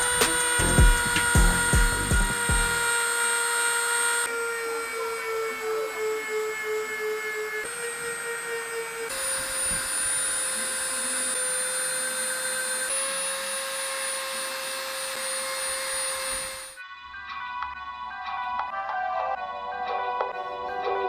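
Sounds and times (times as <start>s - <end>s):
background music: 0.0s - 2.8s, 16.8s - 21.0s
power tool polishing wheel whine: 0.0s - 16.8s.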